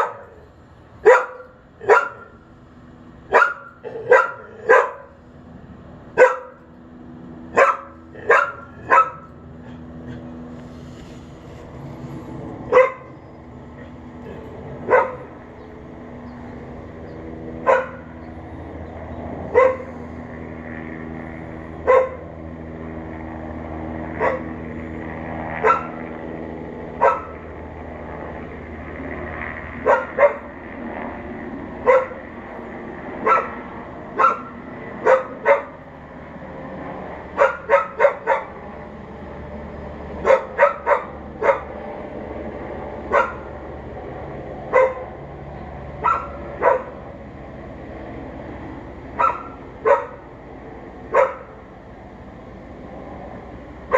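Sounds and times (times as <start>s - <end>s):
dog barking: 0.0s - 0.4s, 1.0s - 2.4s, 3.3s - 5.1s, 6.2s - 6.6s, 7.6s - 9.4s, 12.7s - 13.2s, 14.8s - 15.3s, 17.6s - 18.1s, 19.5s - 19.9s, 21.9s - 22.2s, 24.2s - 24.5s, 25.6s - 26.0s, 27.0s - 27.4s, 29.8s - 30.5s, 31.8s - 32.2s, 33.2s - 33.6s, 34.2s - 35.8s, 37.4s - 38.6s, 40.2s - 41.7s, 43.1s - 43.5s, 44.7s - 45.1s, 46.0s - 47.0s, 49.2s - 50.2s, 51.1s - 51.6s.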